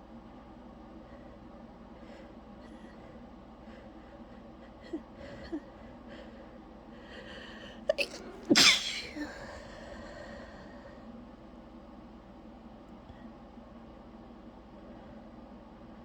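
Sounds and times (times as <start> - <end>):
person sneezing: 8.0 - 9.4.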